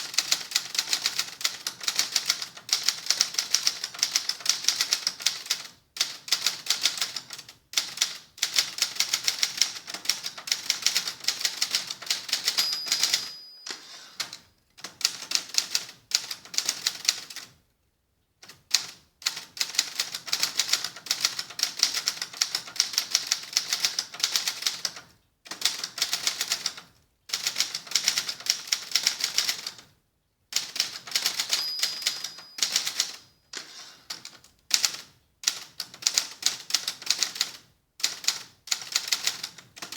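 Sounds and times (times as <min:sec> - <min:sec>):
typewriter keys clacking: 0:00.1 - 0:17.5, 0:30.6 - 0:39.9
typewriter margin bell: 0:11.3 - 0:14.5, 0:30.9 - 0:34.0.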